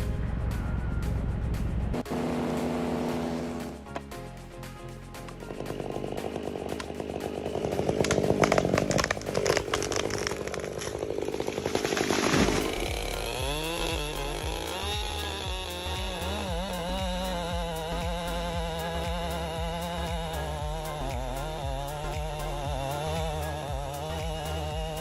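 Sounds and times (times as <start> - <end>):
chainsaw cutting wood: 2.0 - 4.2, 4.8 - 25.0
music with wavering tones: 12.6 - 25.0.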